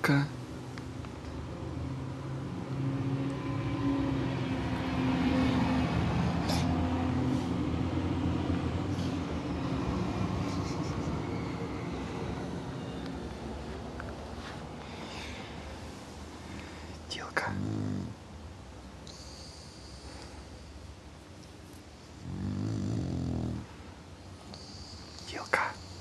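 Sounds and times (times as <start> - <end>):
dog snoring: 17.1 - 18.2, 22.1 - 23.8, 24.5 - 26.0.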